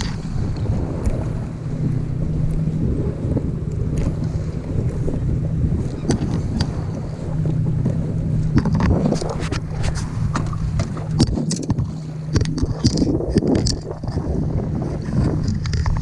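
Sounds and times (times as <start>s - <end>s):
steady low hum: 0.0s - 15.9s
knocks and clicks against boat: 0.0s - 16.0s
wind buffeting microphone: 0.0s - 16.0s.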